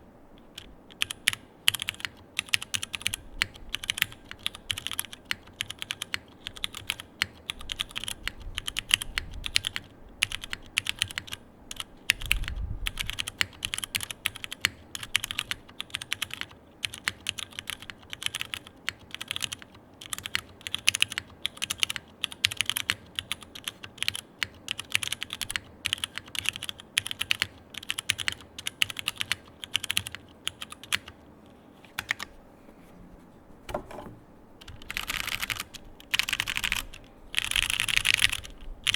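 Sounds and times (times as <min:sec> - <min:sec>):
mechanical keyboard typing: 0:00.4 - 0:31.3, 0:32.0 - 0:32.3, 0:33.7 - 0:38.9.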